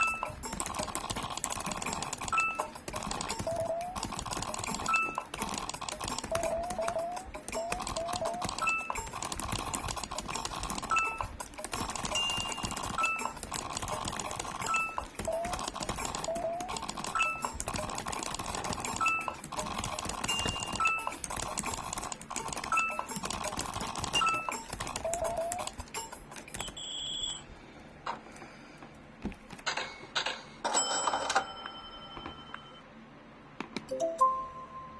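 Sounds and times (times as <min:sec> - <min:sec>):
keyboard keys clicking: 0:00.0 - 0:27.4.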